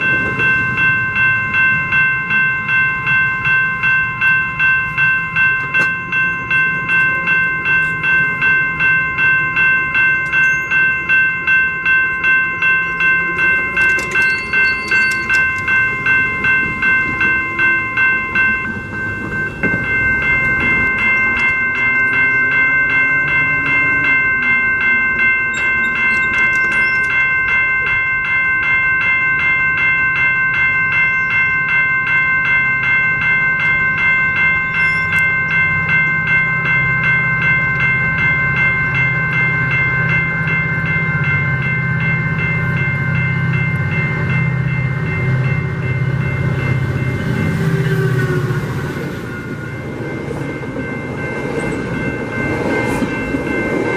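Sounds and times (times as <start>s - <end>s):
train rumbling past: 0.0s - 27.2s, 34.0s - 53.9s
crossing warning bell ringing: 0.0s - 53.9s.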